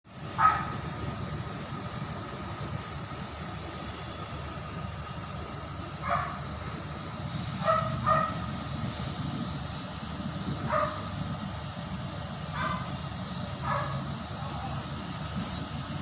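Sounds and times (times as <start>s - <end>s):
dog barking: 0.4s - 0.8s, 6.0s - 6.4s, 7.6s - 8.4s, 10.7s - 11.1s, 12.5s - 12.9s, 13.6s - 14.0s.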